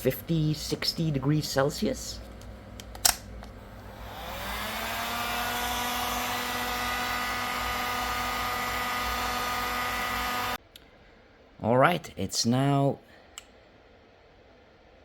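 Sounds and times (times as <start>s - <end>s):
heat gun fan whining: 0.0s - 10.6s.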